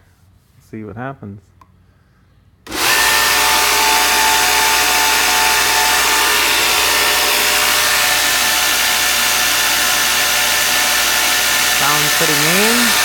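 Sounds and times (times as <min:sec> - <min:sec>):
belt grinder running: 0:02.7 - 0:13.0.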